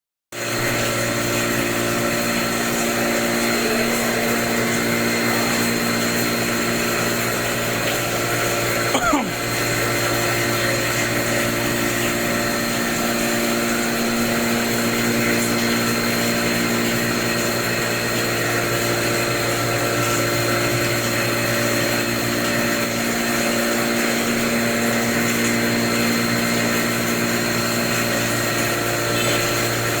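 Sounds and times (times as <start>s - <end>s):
machine hum with high whine: 0.4s - 30.0s.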